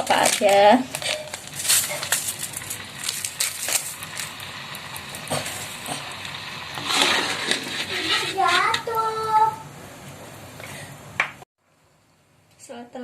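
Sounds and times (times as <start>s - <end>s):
plastic sachet crinkling: 0.0s - 4.7s.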